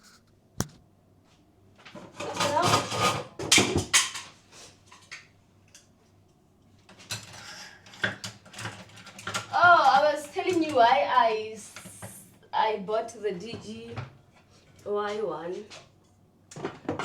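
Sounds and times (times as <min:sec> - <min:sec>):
objects clattering and scraping: 0:01.8 - 0:05.2, 0:06.8 - 0:10.9, 0:13.4 - 0:17.0.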